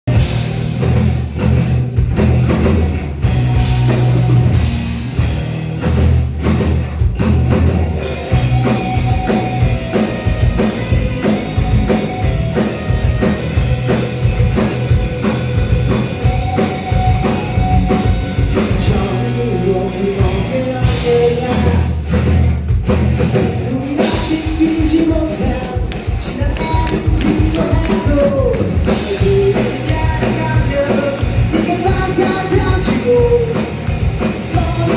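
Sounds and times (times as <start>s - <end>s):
heavy bass: 0.0s - 34.9s
live rock band playing: 0.0s - 34.9s
drum beat: 0.1s - 19.2s, 22.7s - 34.9s.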